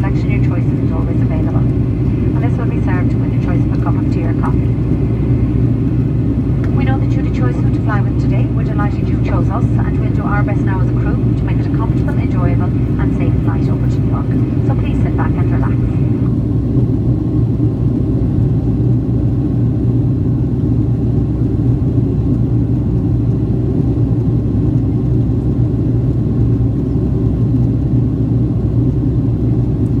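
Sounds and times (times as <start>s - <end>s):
airplane cabin drone: 0.0s - 30.0s.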